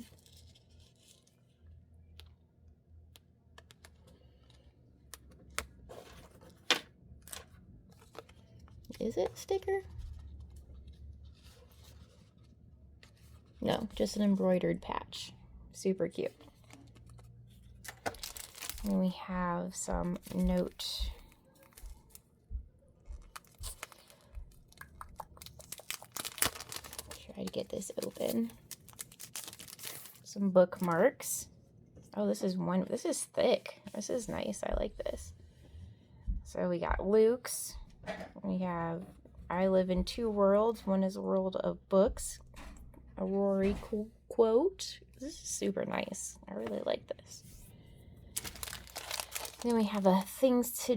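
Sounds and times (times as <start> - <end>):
plastic packaging crinkling: 16.6 - 19.1, 20.1 - 22.2, 23.0 - 31.0, 48.4 - 50.6.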